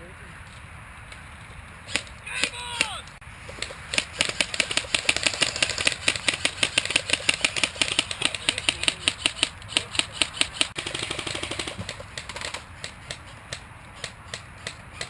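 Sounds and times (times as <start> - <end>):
airsoft guns firing: 3.6 - 15.0.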